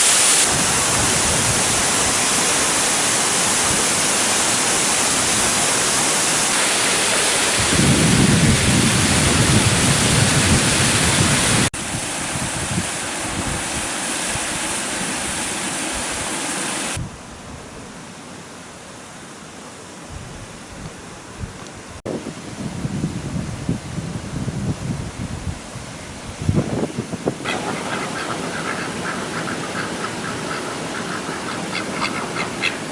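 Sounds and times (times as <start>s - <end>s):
waterfall rushing: 0.0s - 17.0s, 26.8s - 32.9s.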